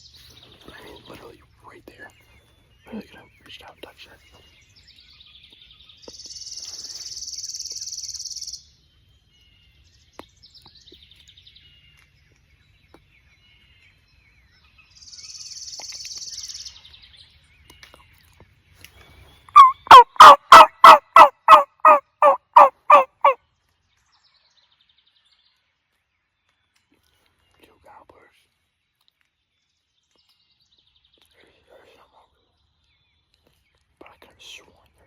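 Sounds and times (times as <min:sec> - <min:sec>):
turkey yelps: 0:19.6 - 0:23.4.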